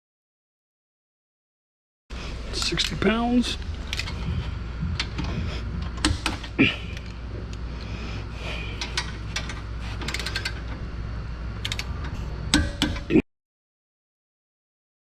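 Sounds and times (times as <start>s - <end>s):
low hum: 2.1s - 13.2s
torque wrench clicking: 8.8s - 10.8s, 11.6s - 11.9s, 12.5s - 13.1s.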